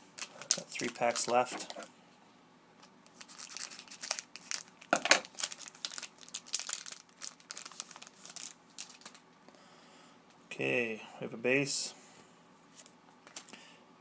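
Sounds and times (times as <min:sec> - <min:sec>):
wrapper crinkling and tearing: 0:00.2 - 0:01.8, 0:03.1 - 0:09.2.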